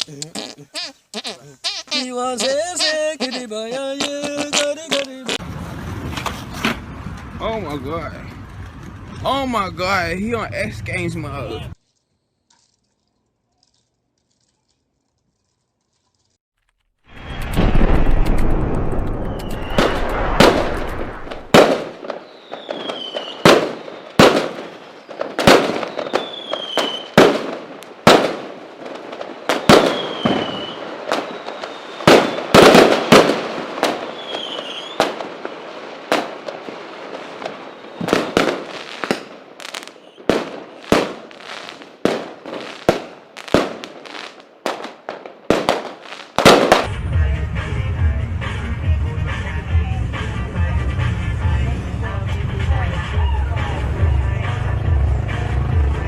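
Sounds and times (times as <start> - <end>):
fireworks cracking bangs: 1.9 - 7.8, 17.0 - 47.0
falling firework whistle: 17.1 - 27.2, 29.5 - 32.8, 34.0 - 35.2, 37.5 - 38.5.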